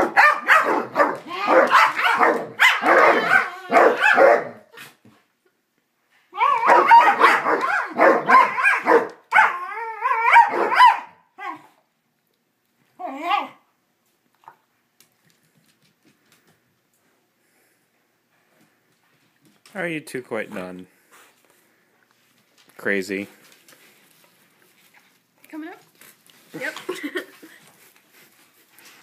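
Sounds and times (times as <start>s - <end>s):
dog yelps: 0.0s - 4.6s, 6.3s - 11.8s, 13.0s - 13.6s
dogs barking in play: 0.0s - 4.9s, 6.3s - 11.8s
dog wavering cries: 1.1s - 4.3s, 6.3s - 11.7s, 13.0s - 13.6s.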